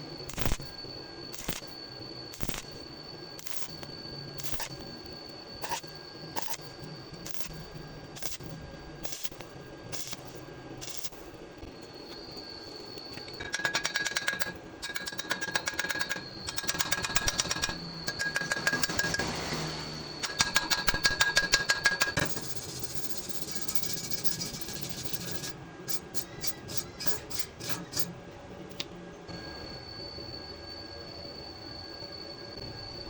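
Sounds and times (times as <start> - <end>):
faint high whine: 0.0 - 33.0
welding arc crackling: 0.3 - 0.7, 1.3 - 2.8, 3.4 - 4.8, 5.6 - 19.4
sharp ticks: 12.9 - 19.2, 20.2 - 28.1.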